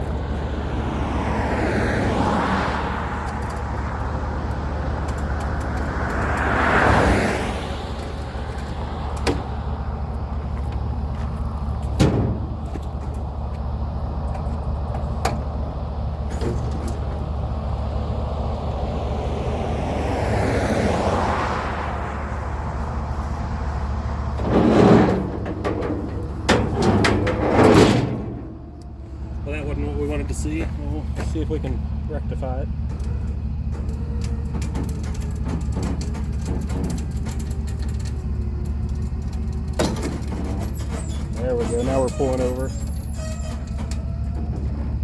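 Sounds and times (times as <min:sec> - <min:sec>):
engine humming: 0:00.0 - 0:45.0.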